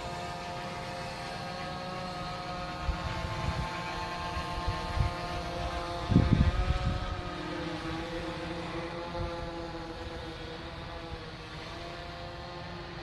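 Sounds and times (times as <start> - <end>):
quadcopter hovering: 0.0 - 13.0
wind gusts on microphone: 2.8 - 11.3.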